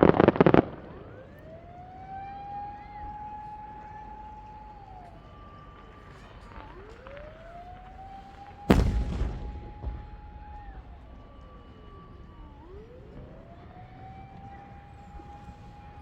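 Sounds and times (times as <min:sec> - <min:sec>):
siren wailing: 0:00.0 - 0:16.0
firework bang and crackle: 0:06.0 - 0:13.4.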